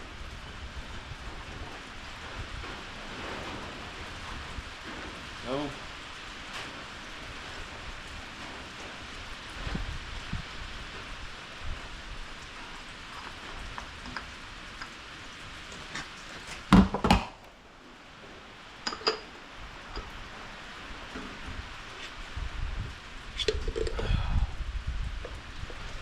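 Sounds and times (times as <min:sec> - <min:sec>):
steady rain hiss: 0:00.0 - 0:26.0
metal tools clanking: 0:18.8 - 0:20.2.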